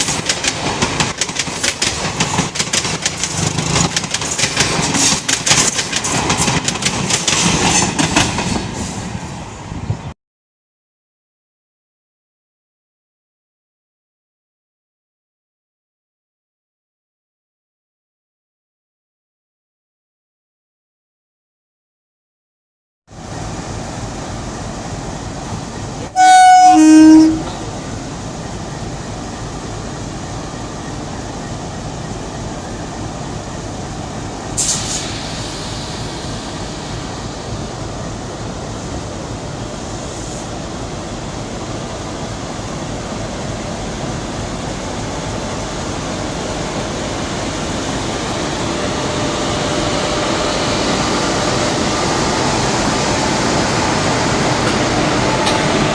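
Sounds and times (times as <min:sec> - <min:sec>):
train wheels rumbling on track: 0:00.0 - 0:10.1, 0:23.1 - 0:55.9
locomotive horn two-note blast: 0:26.1 - 0:27.7.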